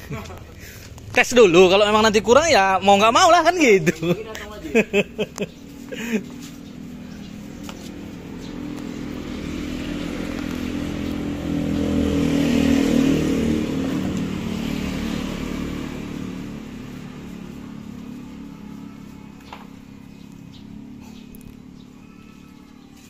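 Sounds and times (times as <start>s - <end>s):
two-stroke motorcycle engine: 4.0s - 22.1s.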